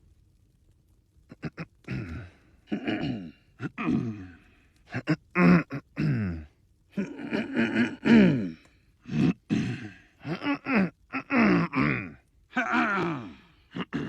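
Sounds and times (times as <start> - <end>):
cartoon voice groaning and grunting: 7.0 - 14.0.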